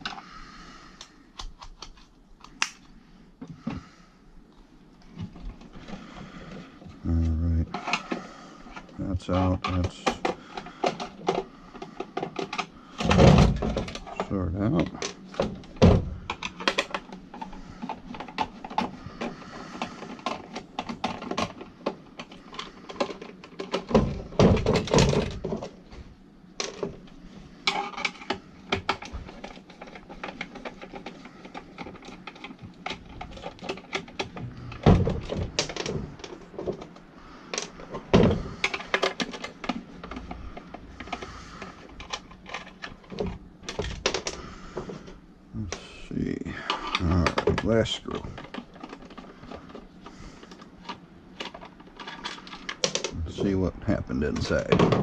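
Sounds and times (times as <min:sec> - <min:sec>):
screwdriver clicks and rattles: 0:01.0 - 0:02.9, 0:27.7 - 0:37.9.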